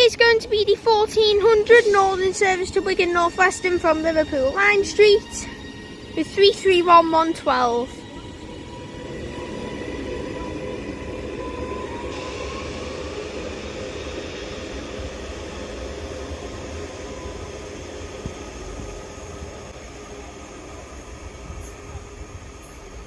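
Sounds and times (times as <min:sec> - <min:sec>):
electric train running: 0:00.0 - 0:23.0
traction motor whine: 0:02.0 - 0:23.0.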